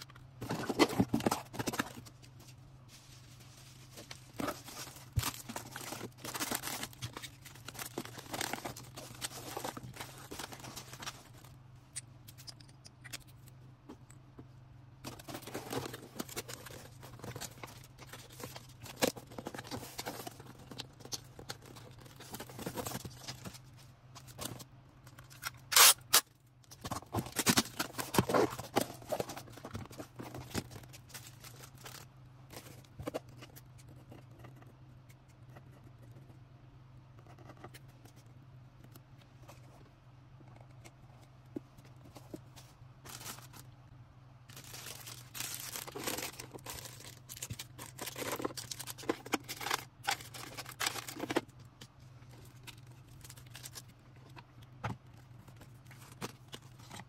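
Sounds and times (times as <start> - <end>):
packaging crinkling and rustling: 0.0 - 11.6, 15.0 - 33.5, 42.1 - 43.7, 44.5 - 54.7
steady low hum: 0.0 - 57.0
tearing or snipping: 25.7 - 26.3.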